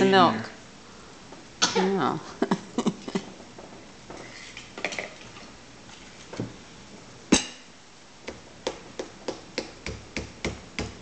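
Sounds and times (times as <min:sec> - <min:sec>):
sharp taps and knocks: 0:08.2 - 0:11.0.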